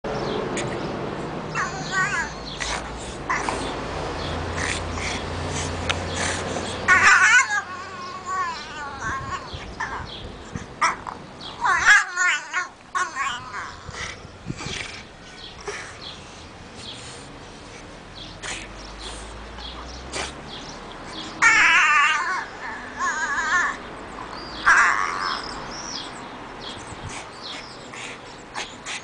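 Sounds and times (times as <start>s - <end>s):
dog whining and grumbling: 1.5s - 3.7s, 6.1s - 15.9s, 21.2s - 27.1s.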